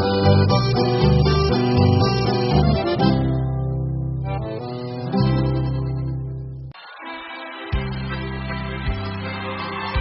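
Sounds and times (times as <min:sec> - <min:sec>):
country music: 0:00.0 - 0:10.0.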